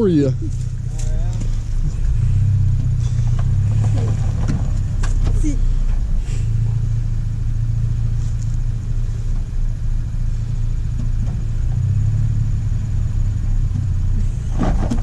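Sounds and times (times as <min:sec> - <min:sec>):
vehicle engine running at low revs: 0:00.0 - 0:15.0.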